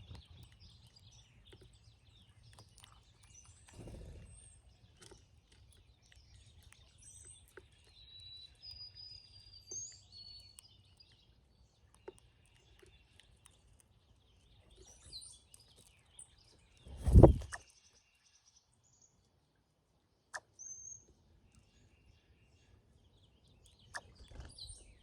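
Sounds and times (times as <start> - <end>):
birds whistling and chirping: 6.1 - 11.1, 14.6 - 17.8, 20.4 - 21.1, 23.6 - 25.0.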